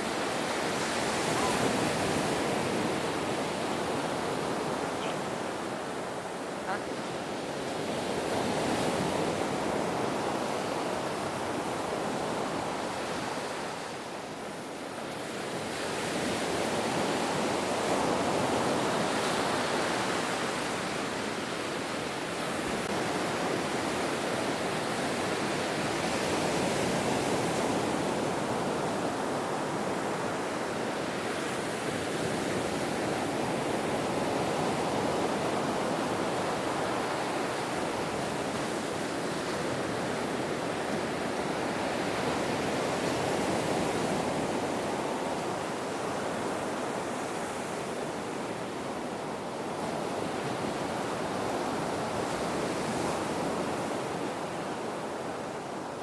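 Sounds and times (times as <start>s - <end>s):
ocean surf roar: 0.0s - 14.3s.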